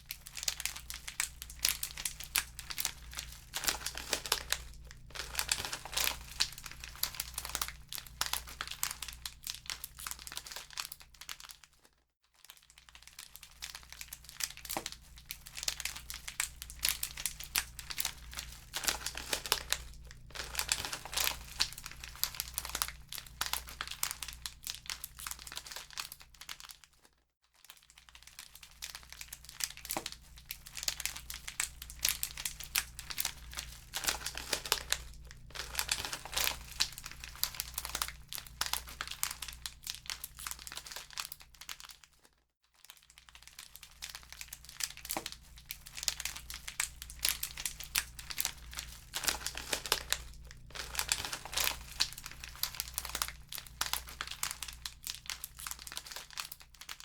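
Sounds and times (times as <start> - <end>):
wood fire crackling and popping: 0.2 - 9.1, 15.5 - 24.9, 29.4 - 40.7, 45.9 - 56.5
steady low hum: 0.9 - 8.8, 16.6 - 23.6, 31.2 - 39.6.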